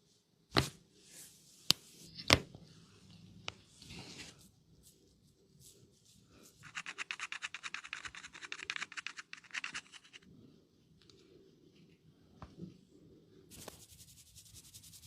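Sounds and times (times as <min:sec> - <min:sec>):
fingers scratching through hair: 0:06.6 - 0:10.2, 0:13.5 - 0:15.0.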